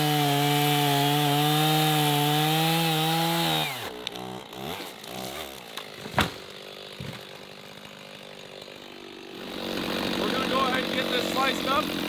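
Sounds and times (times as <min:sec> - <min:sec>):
chainsaw running: 0:00.0 - 0:12.0.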